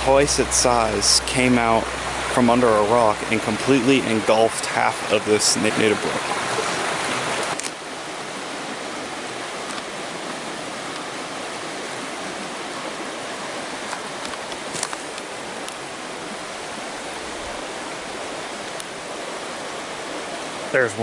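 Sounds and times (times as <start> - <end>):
mountain stream flowing: 0.0 - 21.0
faint clicks: 18.6 - 18.9.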